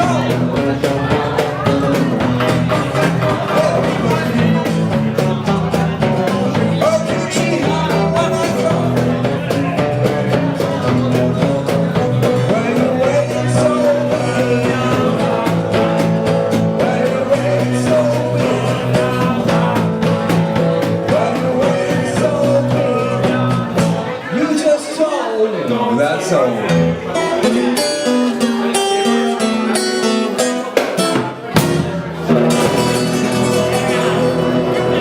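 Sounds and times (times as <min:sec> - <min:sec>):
drums steady beat: 0:00.0 - 0:24.1, 0:30.4 - 0:35.0
person singing: 0:00.0 - 0:24.1
rock band playing: 0:00.0 - 0:25.0, 0:26.2 - 0:35.0.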